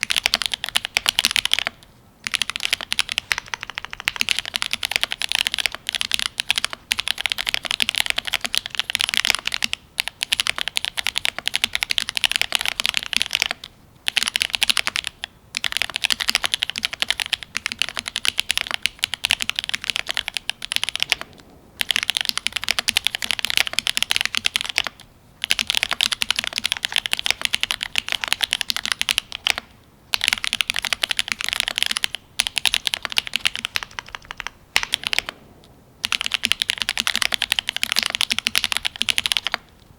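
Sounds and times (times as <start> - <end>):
mechanical keyboard typing: 0.0 - 35.4, 36.0 - 39.8.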